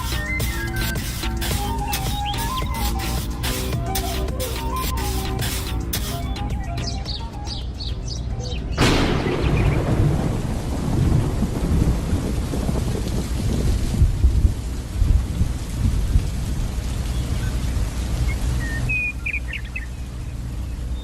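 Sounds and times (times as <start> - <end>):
steady rain: 0.0 - 7.0, 8.8 - 21.0
birds chirping: 0.0 - 9.9, 17.1 - 21.0
rolling thunder: 8.8 - 16.5.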